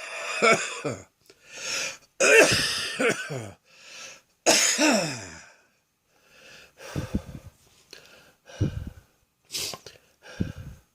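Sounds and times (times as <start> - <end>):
wheezing breath: 1.3 - 2.0, 6.2 - 10.9.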